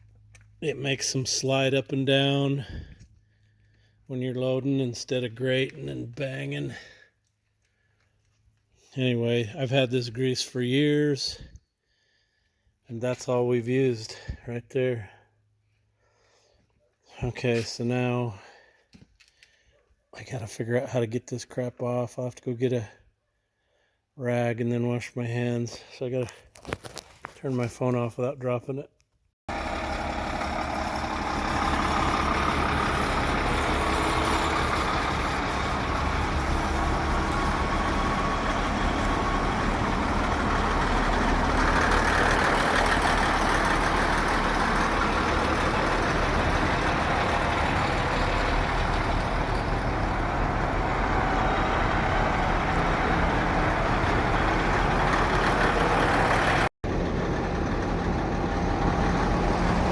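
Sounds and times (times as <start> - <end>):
heavy diesel engines running: 29.5 - 59.9.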